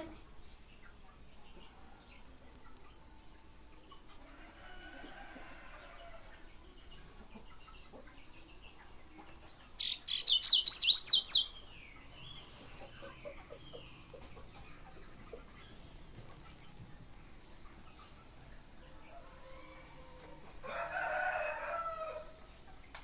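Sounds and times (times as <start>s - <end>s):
faint bird calls: 9.8s - 11.7s
bird singing whistled notes: 9.8s - 11.8s.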